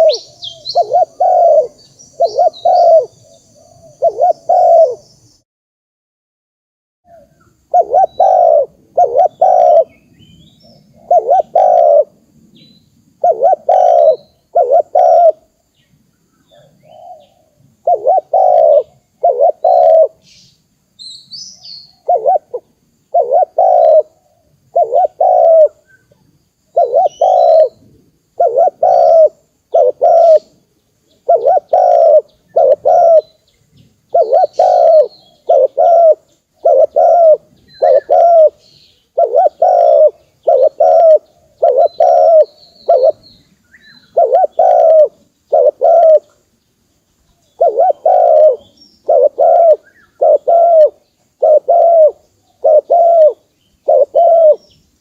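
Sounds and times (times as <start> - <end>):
dove cooing: 0.0 - 5.1, 7.1 - 10.0, 10.6 - 12.2, 13.2 - 15.6, 16.5 - 20.2, 21.9 - 26.1, 26.7 - 30.6, 31.2 - 33.4, 34.1 - 43.3, 43.9 - 46.4, 47.5 - 54.7
small birds chirping: 0.0 - 5.4, 7.1 - 55.0.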